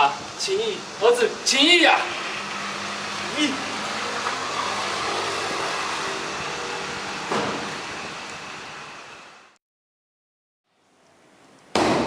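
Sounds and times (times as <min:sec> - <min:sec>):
steady rushing noise: 0:00.1 - 0:09.6.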